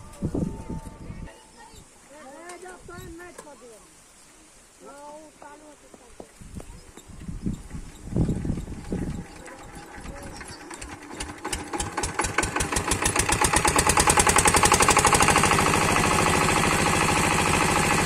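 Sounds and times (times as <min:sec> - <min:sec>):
generator engine starting up: 0:08.2 - 0:18.0.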